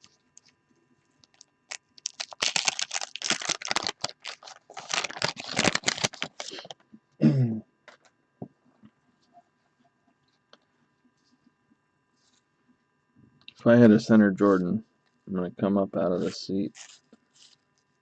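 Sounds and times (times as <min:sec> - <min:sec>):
cards clicking and crinkling: 0:01.2 - 0:06.8.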